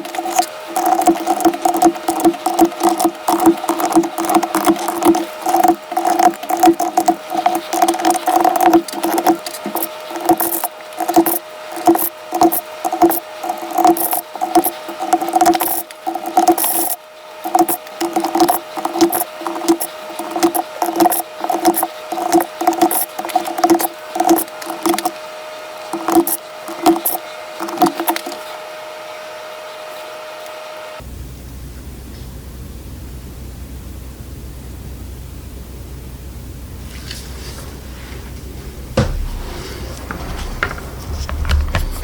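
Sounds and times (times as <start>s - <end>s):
mechanical keyboard typing: 0.1s - 25.1s.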